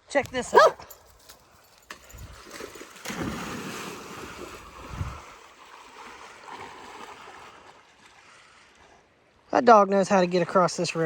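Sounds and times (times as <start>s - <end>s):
river water rushing and splashing: 2.4s - 8.8s.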